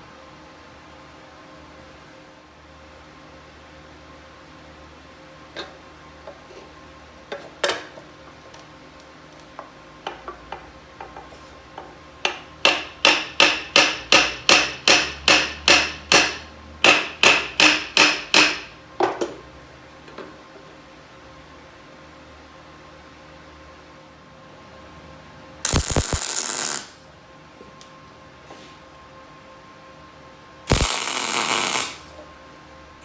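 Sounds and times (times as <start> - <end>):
hammer striking metal: 12.3 - 18.7.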